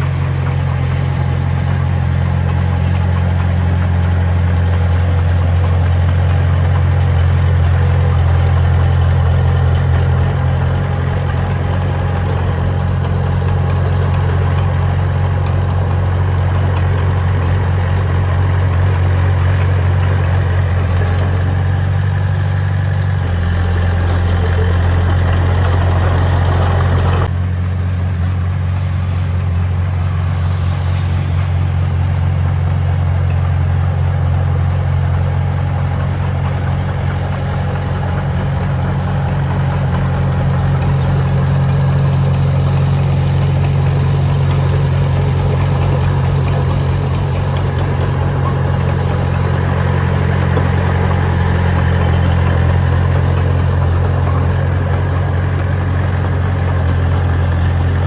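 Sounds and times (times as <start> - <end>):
diesel engine droning: 0.0 - 58.0.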